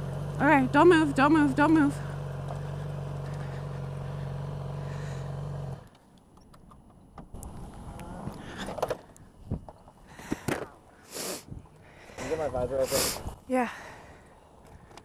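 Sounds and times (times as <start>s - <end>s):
motorcycle engine idling: 0.0s - 6.0s.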